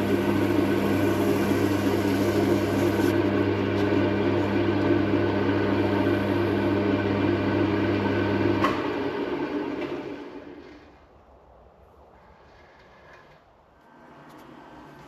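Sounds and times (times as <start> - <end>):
electric motor humming: 0.0 - 10.6.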